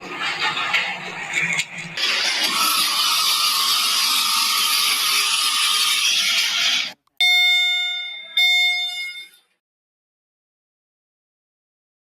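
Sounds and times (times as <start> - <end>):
bell-like chime tones: 7.2 - 9.5.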